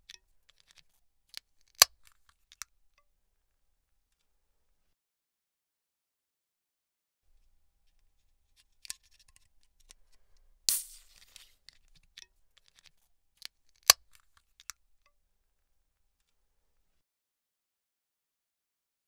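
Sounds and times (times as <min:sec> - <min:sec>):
hiss of escaping gas: 0:10.7 - 0:11.5
sharp click: 0:10.7 - 0:11.6, 0:12.6 - 0:14.8.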